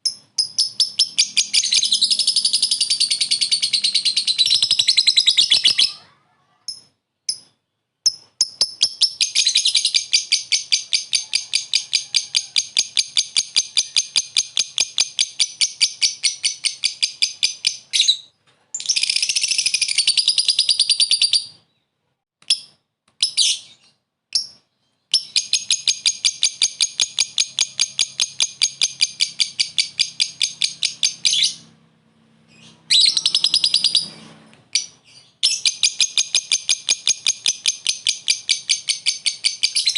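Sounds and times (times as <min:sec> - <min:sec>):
lovebird shrill chattering: 0:00.0 - 0:06.1, 0:32.6 - 0:34.1
bird chirps: 0:00.0 - 0:39.9.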